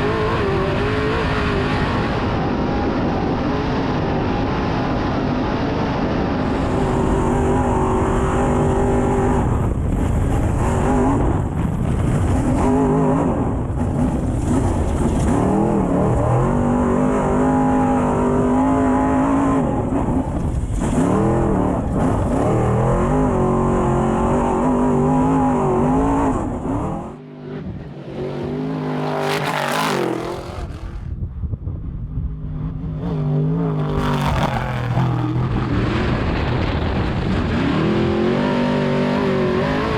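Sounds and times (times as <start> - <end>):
truck engine revving: 6.5 - 31.2, 32.6 - 39.9
rushing sweep: 27.2 - 31.1.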